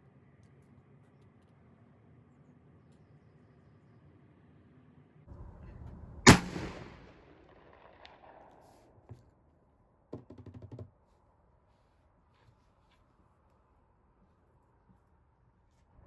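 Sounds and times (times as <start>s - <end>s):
rifle shot echoing: 6.2s - 9.0s.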